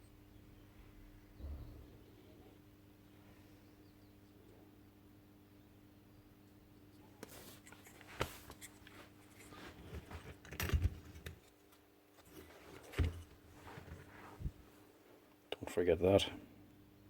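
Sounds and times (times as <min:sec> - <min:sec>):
tool parts knocking and clicking: 0:09.9 - 0:11.5.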